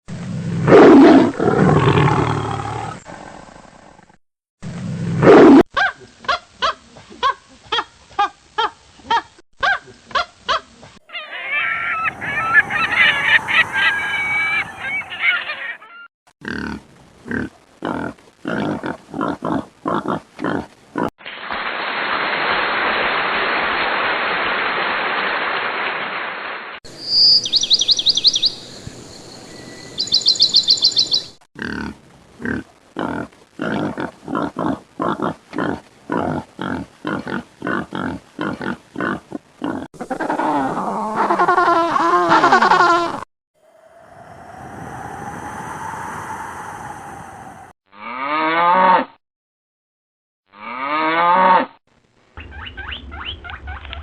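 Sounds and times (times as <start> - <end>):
animal roar-like calls: 11.1 - 15.9, 43.6 - 48.4
pulsing animal calls: 11.1 - 16.0
chorus of overlapping pitched calls: 11.2 - 15.3.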